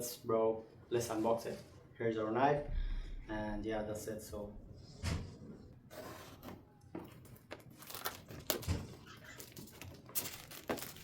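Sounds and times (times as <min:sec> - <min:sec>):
plastic packaging crinkling and tearing: 0:07.3 - 0:11.0.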